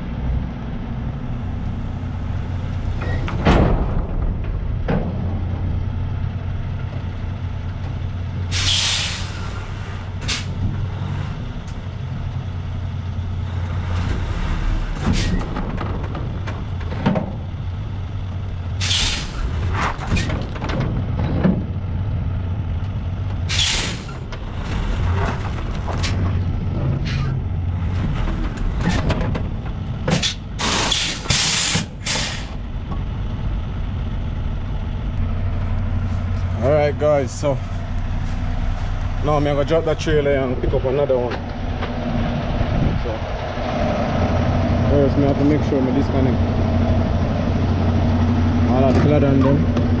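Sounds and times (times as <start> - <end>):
diesel truck engine idling: 0.0 - 50.0
air brake hisses: 8.5 - 10.5, 18.8 - 19.4, 23.5 - 24.2, 30.2 - 32.6.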